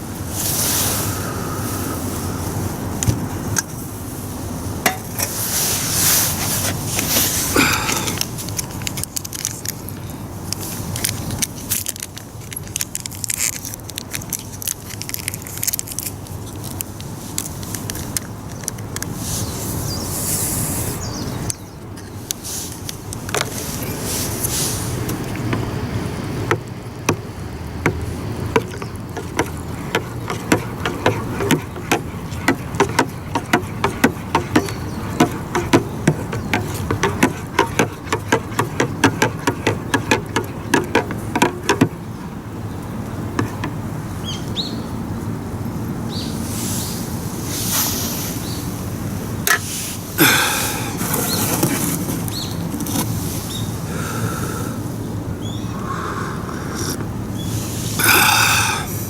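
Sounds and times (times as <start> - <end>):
outdoor background noise: 0.0 - 59.0
sharp knocks: 27.9 - 42.0.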